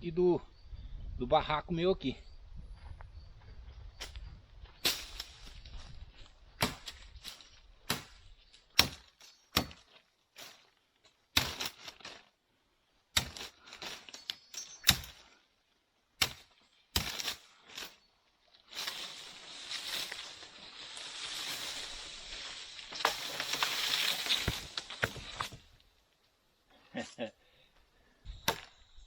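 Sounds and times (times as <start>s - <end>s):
blade chopping into tree trunk: 6.6s - 7.0s, 7.9s - 8.2s, 8.8s - 10.6s, 11.4s - 12.1s, 13.2s - 14.0s, 14.6s - 15.2s, 16.2s - 17.4s, 22.9s - 25.6s, 28.4s - 28.7s.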